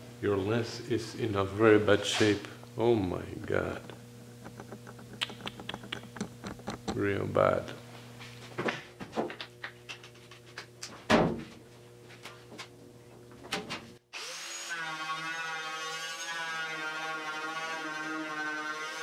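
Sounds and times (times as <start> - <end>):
handling clicks and knocks: 3.4 - 7.1.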